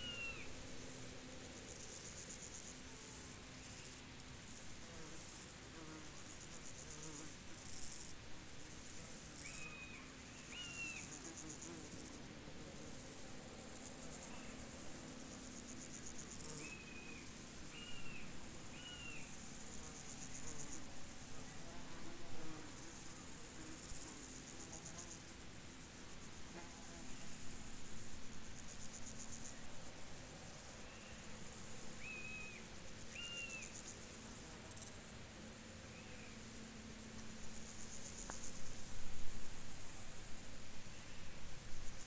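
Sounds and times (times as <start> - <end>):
insects trilling: 8.8 - 12.2, 12.8 - 36.6.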